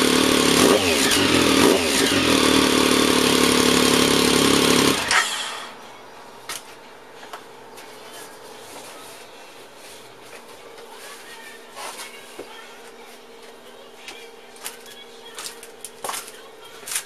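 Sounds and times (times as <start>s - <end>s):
engine revving: 0.0s - 5.4s
engine exhaust idling: 0.0s - 5.8s.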